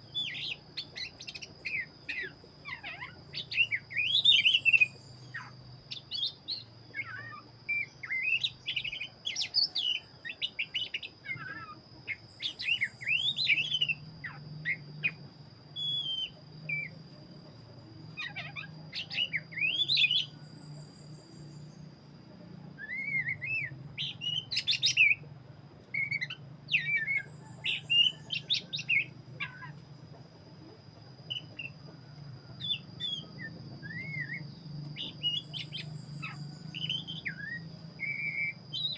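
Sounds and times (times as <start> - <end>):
thin steady high tone: 0.0 - 38.9
bird singing whistled phrases: 0.1 - 15.2, 15.8 - 17.0, 18.1 - 21.4, 22.8 - 25.2, 25.9 - 29.8, 32.5 - 38.9.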